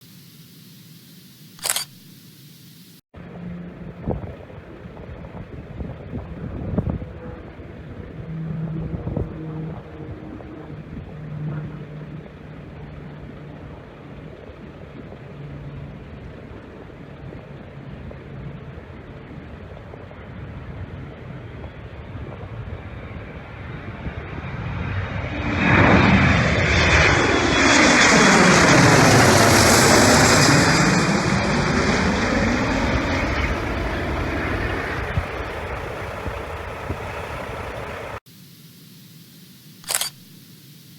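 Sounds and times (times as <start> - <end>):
airplane engine: 0.0 - 40.9
engine drone: 24.2 - 40.9
low hum: 26.2 - 40.9.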